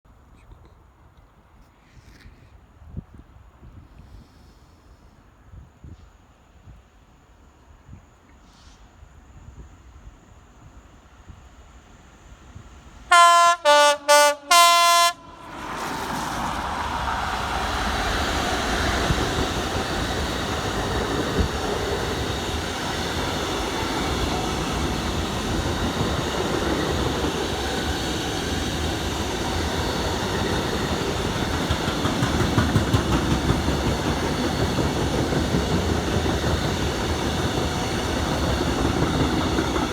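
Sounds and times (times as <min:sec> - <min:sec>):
train rumbling past: 0:11.0 - 0:39.9
two-note locomotive horn blasts: 0:13.1 - 0:15.5
wheels clattering on rail: 0:15.4 - 0:39.9.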